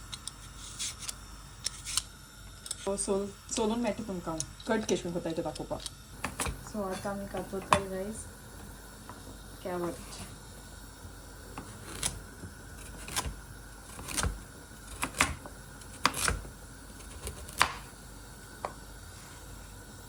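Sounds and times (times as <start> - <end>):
knife chopping carrot on board: 12.9 - 16.4, 17.0 - 17.9.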